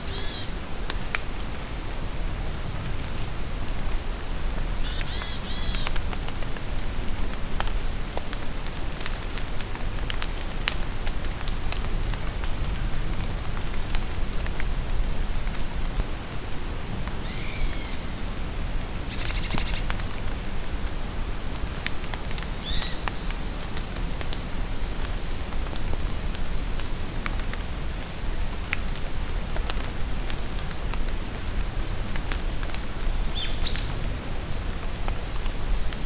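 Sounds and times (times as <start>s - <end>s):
songbirds singing: 0.0s - 0.6s, 4.8s - 6.0s, 16.0s - 18.3s, 22.4s - 23.6s, 33.2s - 34.5s
rain dripping on leaves: 0.0s - 36.0s.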